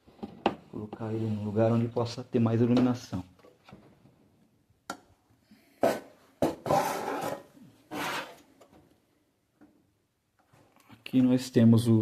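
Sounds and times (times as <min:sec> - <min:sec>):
rubbing and scraping by hand: 0:05.8 - 0:08.6.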